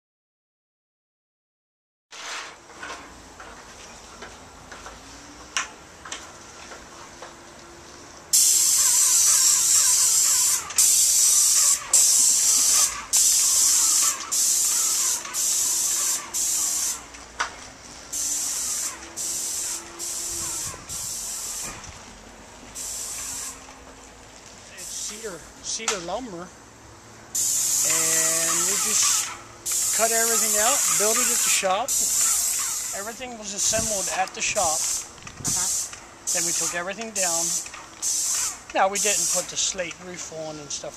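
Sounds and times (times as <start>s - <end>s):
sprayer hissing in bursts: 8.3s - 17.1s, 18.1s - 21.8s, 22.7s - 23.7s, 24.7s - 25.4s, 27.3s - 39.8s.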